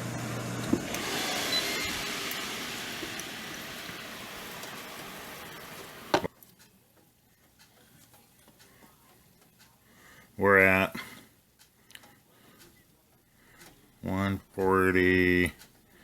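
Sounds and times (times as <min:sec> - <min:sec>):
air fryer fan hissing: 0:00.0 - 0:06.3.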